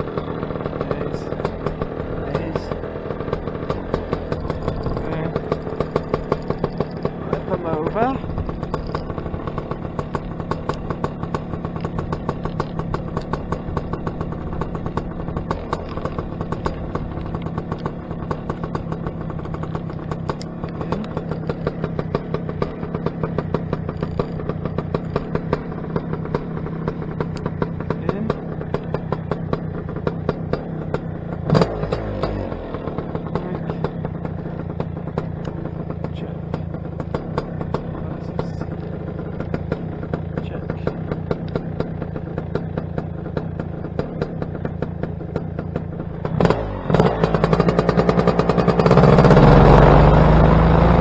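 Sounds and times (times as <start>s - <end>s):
paramotor engine droning: 0.0s - 51.0s.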